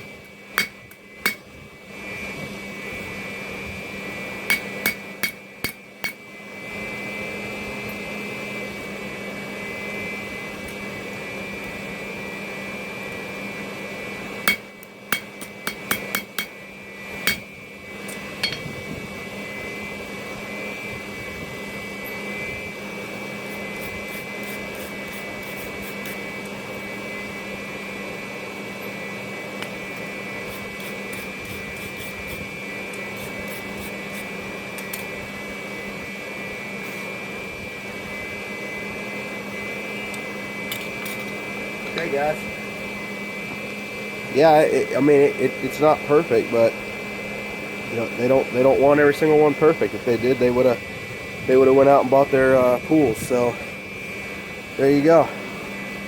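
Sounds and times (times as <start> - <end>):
machine hum with high whine: 0.0 - 56.0
hammer tapping iron on anvil: 0.6 - 1.5, 4.5 - 6.2, 14.5 - 16.6, 17.3 - 17.5, 18.4 - 18.7.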